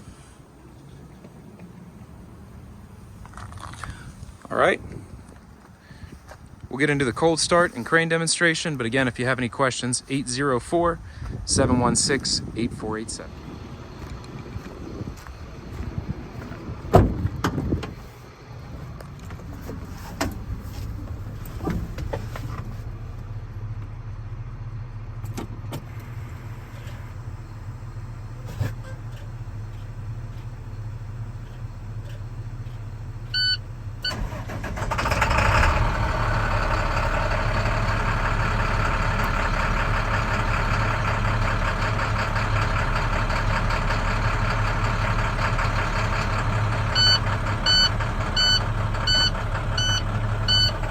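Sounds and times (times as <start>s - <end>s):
diesel engine starting and idling: 0.0s - 50.9s
short beeps: 33.3s - 34.2s, 47.0s - 50.8s.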